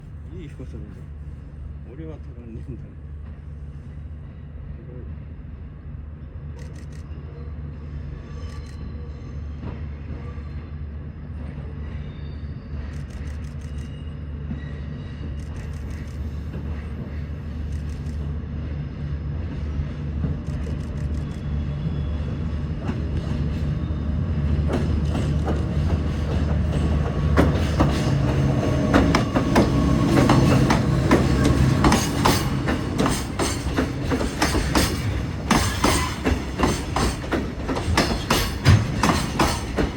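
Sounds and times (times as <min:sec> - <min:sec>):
diesel train engine hum: 0:00.0 - 0:39.9
train wheels clattering: 0:22.3 - 0:39.9.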